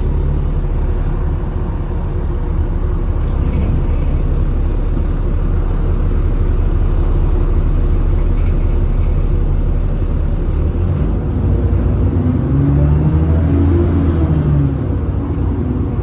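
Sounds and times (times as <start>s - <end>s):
faint high whine: 0.0s - 10.8s
bus diesel engine rumbling: 0.0s - 16.0s.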